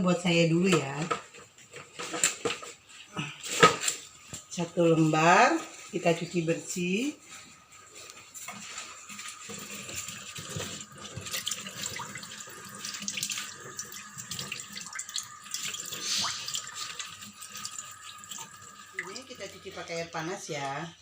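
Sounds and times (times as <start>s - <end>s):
running water splashing: 7.8s - 20.4s.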